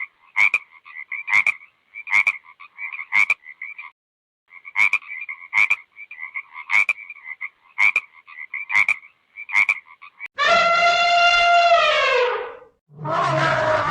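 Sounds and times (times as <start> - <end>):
animal calls with click and rasp: 6.7 - 13.9.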